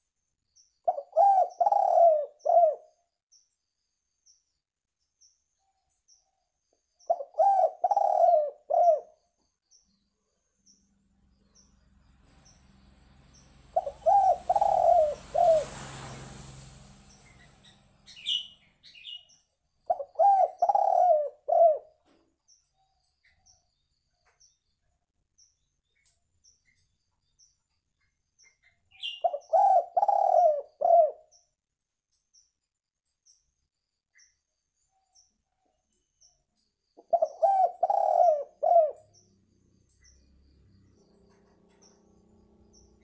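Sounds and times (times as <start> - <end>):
dove cooing: 0.9 - 2.9, 7.1 - 9.2, 13.6 - 15.8, 19.9 - 22.1, 29.0 - 31.3, 37.0 - 39.2
rushing noise: 12.2 - 18.8.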